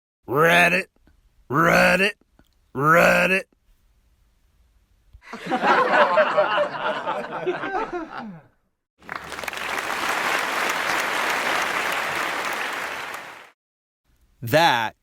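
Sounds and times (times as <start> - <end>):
laughter: 5.2 - 8.6
applause: 9.0 - 13.6.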